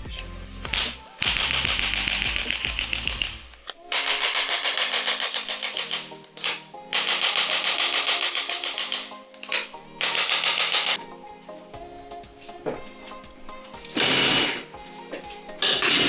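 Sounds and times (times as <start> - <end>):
rapid clicks of adjusting instrument: 0.2 - 11.0.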